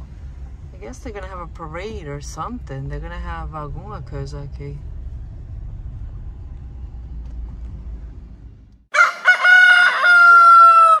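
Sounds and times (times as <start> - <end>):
car cabin rumble: 0.0 - 8.9
rooster crowing: 8.9 - 11.0.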